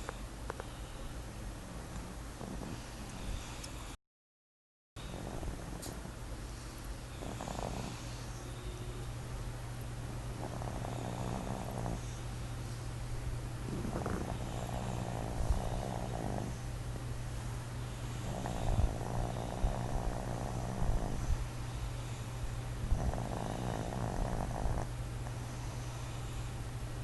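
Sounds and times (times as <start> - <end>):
steady low hum: 0.0 - 4.0, 5.0 - 27.0
person snoring: 10.4 - 12.2, 13.6 - 16.6, 18.2 - 21.3, 22.9 - 24.9.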